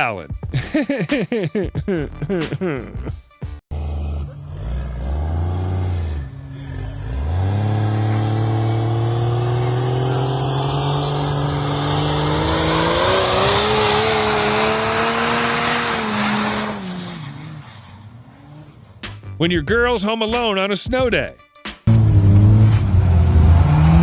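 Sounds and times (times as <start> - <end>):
car engine revving and accelerating: 3.7 - 19.0, 21.9 - 24.0.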